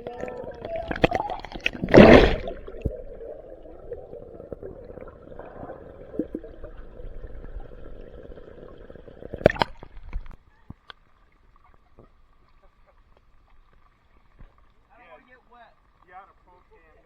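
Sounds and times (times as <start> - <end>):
muffled water sound: 0.0 - 14.9
loud water splash: 0.8 - 3.1.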